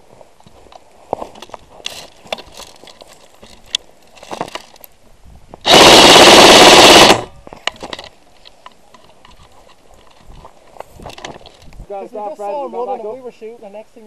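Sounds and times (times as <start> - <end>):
airsoft gun full-auto burst: 5.6 - 7.3.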